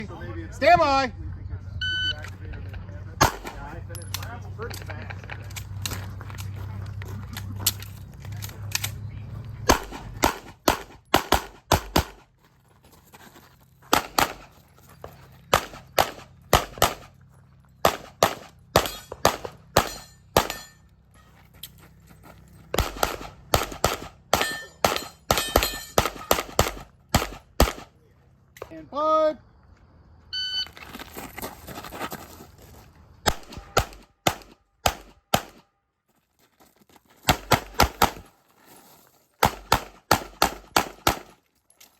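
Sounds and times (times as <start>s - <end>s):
handgun shots: 3.2s - 3.7s, 9.7s - 12.2s, 13.9s - 14.5s, 15.5s - 17.1s, 17.8s - 20.8s, 22.8s - 27.9s, 33.3s - 35.6s, 37.3s - 38.3s, 39.4s - 41.4s.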